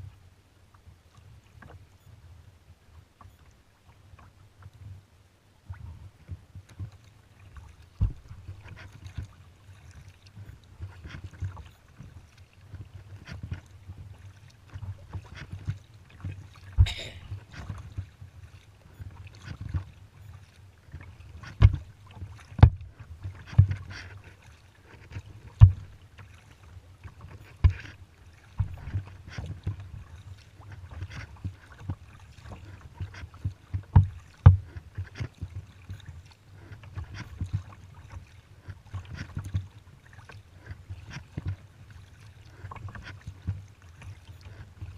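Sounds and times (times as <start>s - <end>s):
paddle strokes in water: 0.0s - 44.9s
knocks and taps on kayak: 8.0s - 8.3s, 21.5s - 22.8s, 25.5s - 25.9s, 33.4s - 35.5s.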